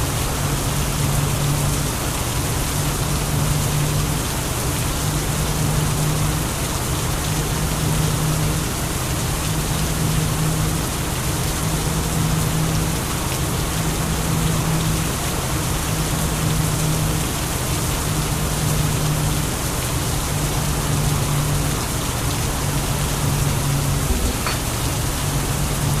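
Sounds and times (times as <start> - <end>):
heavy rain: 0.0 - 26.0
deep hum: 23.4 - 25.8.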